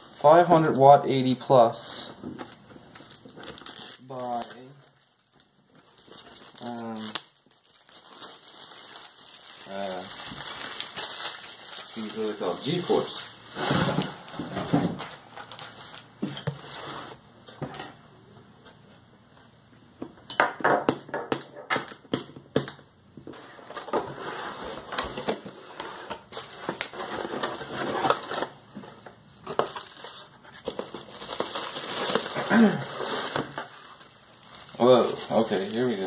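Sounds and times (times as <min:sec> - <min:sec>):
packaging rustling and crinkling: 0:02.0 - 0:17.2, 0:23.3 - 0:36.0.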